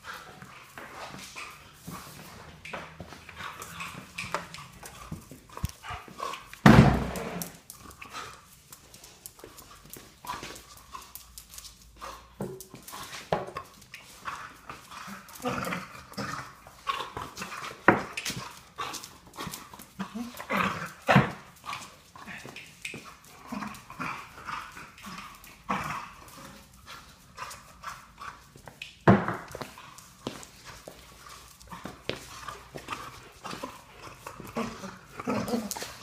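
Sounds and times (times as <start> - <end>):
dog making weird noises: 18.8 - 26.7, 31.6 - 36.0.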